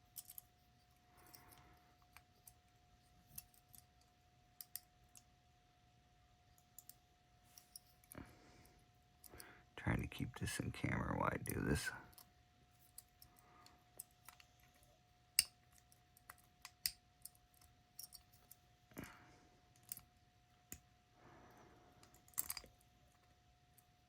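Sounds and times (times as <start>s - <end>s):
lock pick clicking and scraping: 0.0s - 0.5s, 12.9s - 18.6s, 22.0s - 22.8s
faint steady hum: 0.0s - 24.0s.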